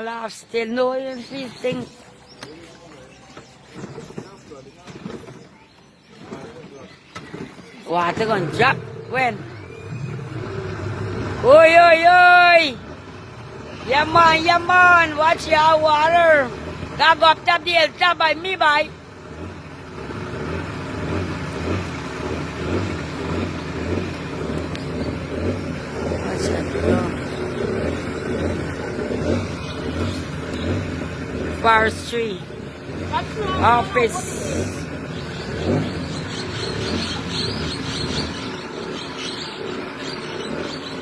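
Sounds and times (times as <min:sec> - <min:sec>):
birds chirping: 0:00.0 - 0:41.0
vehicle engine throbbing: 0:01.2 - 0:41.0.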